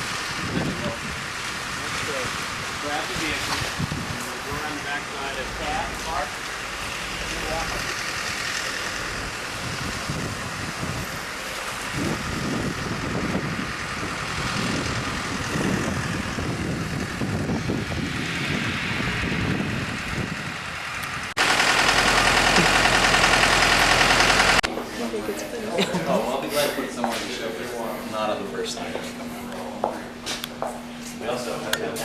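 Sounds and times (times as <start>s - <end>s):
wind rumble on microphone: 0.0s - 4.8s, 9.0s - 21.4s
golf cart running: 0.0s - 24.7s.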